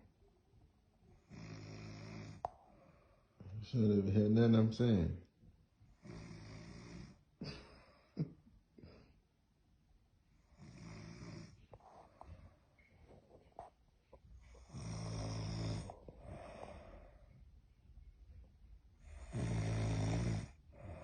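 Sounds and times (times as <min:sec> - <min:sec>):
person snoring: 0:01.2 - 0:02.6, 0:10.6 - 0:11.6, 0:14.5 - 0:17.3, 0:19.1 - 0:21.0.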